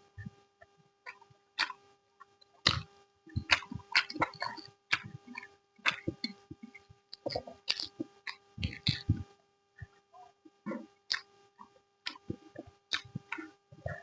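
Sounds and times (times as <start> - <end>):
faint electrical hum: 0.0 - 14.0
chewing and mouth clicks: 1.1 - 1.8, 2.6 - 9.2, 12.0 - 14.0.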